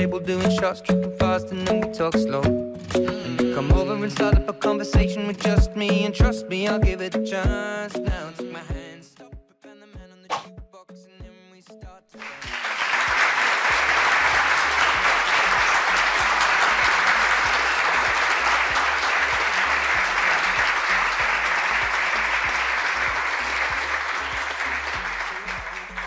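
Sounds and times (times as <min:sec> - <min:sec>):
large crowd applauding: 0:12.2 - 0:26.0.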